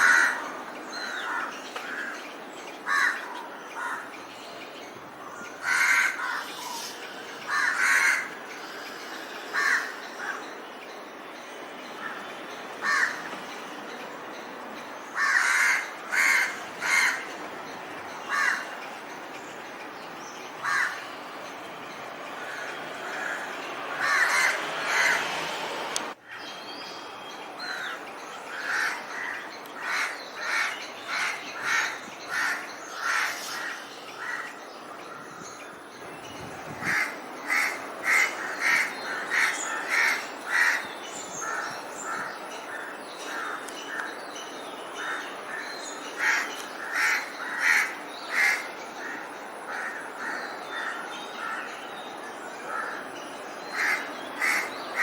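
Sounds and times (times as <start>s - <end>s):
crows cawing: 0.0s - 2.2s, 2.9s - 4.1s, 5.6s - 6.8s, 7.5s - 8.4s, 9.5s - 10.4s, 12.8s - 13.3s, 15.2s - 17.3s, 18.3s - 18.7s, 20.6s - 21.0s, 22.4s - 25.3s, 27.7s - 34.5s, 36.9s - 44.0s, 46.2s - 51.7s, 53.7s - 55.0s
outdoor hiss: 23.1s - 28.4s.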